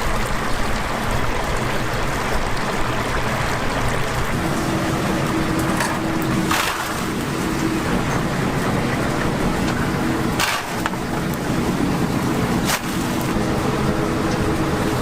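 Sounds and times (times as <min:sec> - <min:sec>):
low hum: 0:00.0 - 0:15.0
oil sizzling: 0:04.0 - 0:15.0.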